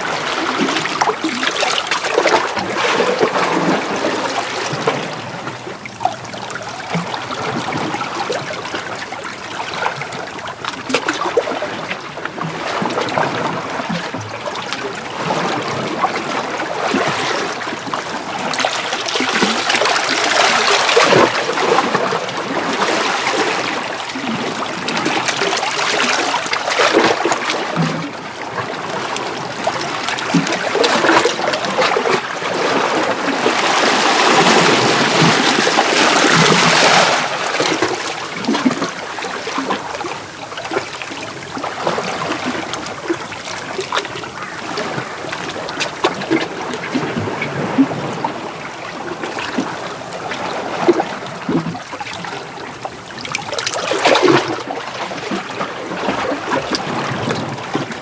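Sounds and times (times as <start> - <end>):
waves washing over rocks: 14.6 - 52.4.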